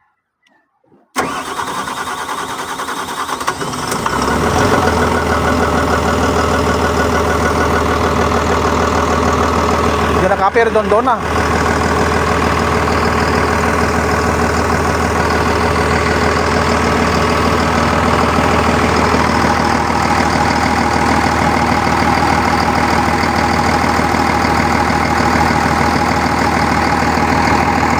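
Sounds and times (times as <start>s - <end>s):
excavator diesel engine idling: 1.2s - 27.9s.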